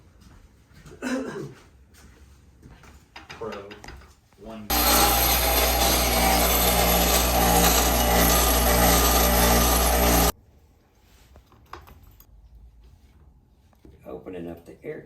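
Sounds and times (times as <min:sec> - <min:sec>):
power tool whirring: 0:04.7 - 0:10.4.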